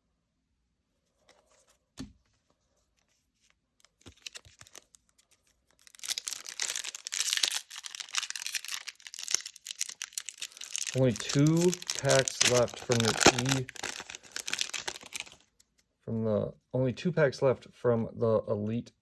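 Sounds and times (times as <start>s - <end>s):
foil wrapper tearing and crinkling: 3.9s - 15.5s.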